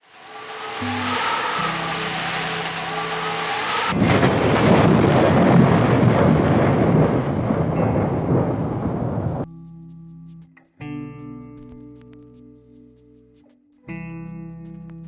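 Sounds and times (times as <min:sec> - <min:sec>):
held low musical tones: 0:00.0 - 0:05.9
loud dense rumbling: 0:00.0 - 0:09.5.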